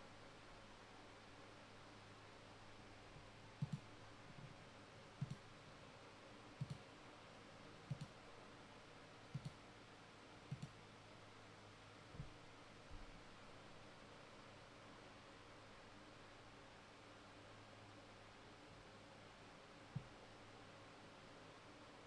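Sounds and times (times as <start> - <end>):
faint low hum: 0.0 - 22.0
soft clicks in pairs: 3.6 - 4.5, 5.2 - 5.5, 6.6 - 6.9, 7.9 - 8.2, 9.4 - 9.6, 10.5 - 10.8.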